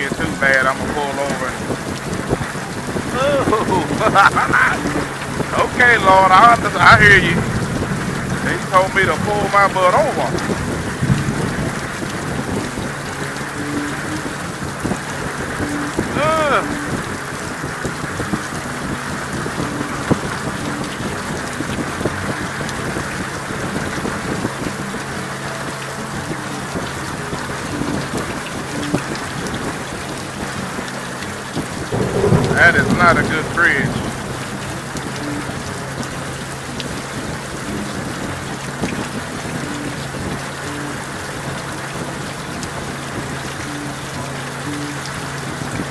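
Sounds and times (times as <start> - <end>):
heavy rain on microphone: 0.0 - 45.9
wind rushing on helmet: 31.9 - 35.6.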